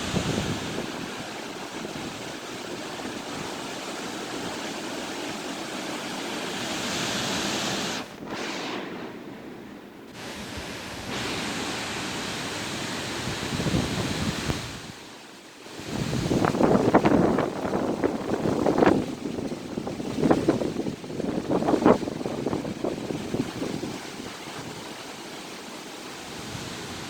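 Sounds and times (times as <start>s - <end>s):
strong wind rushing: 0.0s - 2.4s, 6.7s - 15.0s, 15.7s - 24.9s.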